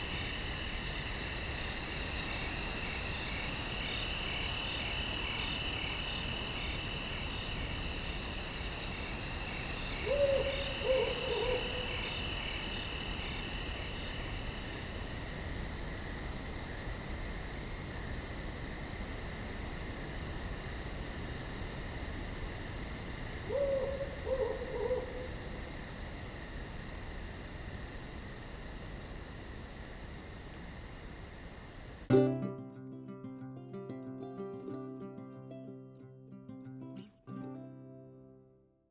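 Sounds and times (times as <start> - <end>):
night crickets chirping: 0.0 - 32.5
owl hooting: 10.0 - 12.2, 23.5 - 25.6.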